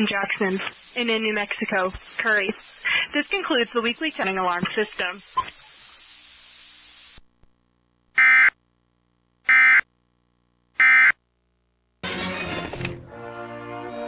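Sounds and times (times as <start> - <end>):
faint radio hiss: 0.0 - 12.0
music: 12.0 - 14.0.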